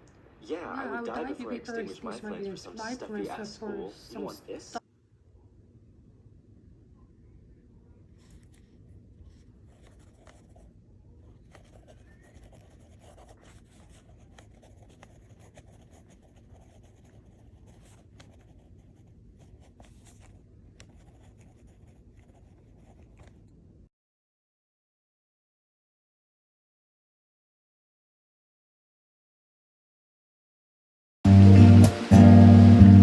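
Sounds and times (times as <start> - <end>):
low room hum: 0.0 - 23.9
pen scratching on paper: 8.2 - 23.4.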